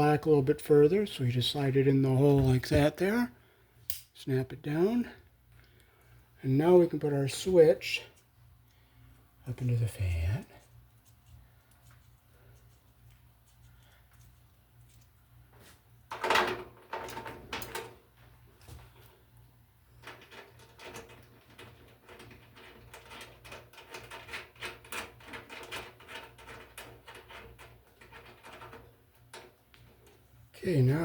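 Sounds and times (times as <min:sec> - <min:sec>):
small clicks and rustles of wiring: 0:10.6 - 0:15.8, 0:18.6 - 0:30.4.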